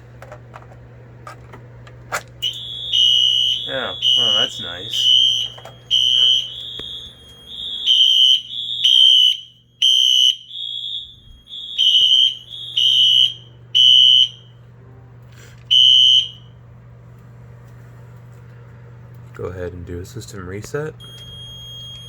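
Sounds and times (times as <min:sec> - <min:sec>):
steady low hum: 0:00.0 - 0:22.0
high-pitched alarm beeps: 0:02.4 - 0:14.5, 0:15.7 - 0:16.5, 0:21.0 - 0:22.0.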